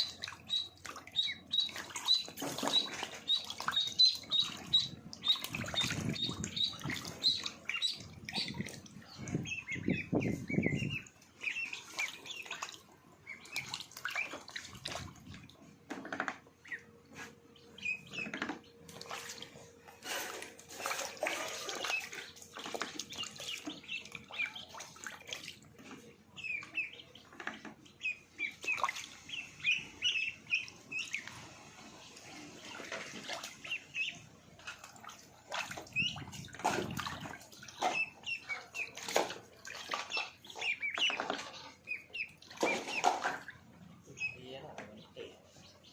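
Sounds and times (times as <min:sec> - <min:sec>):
water splashing: 0:00.0 - 0:15.7, 0:18.9 - 0:27.0, 0:28.4 - 0:45.3
ducklings peeping: 0:00.0 - 0:45.9.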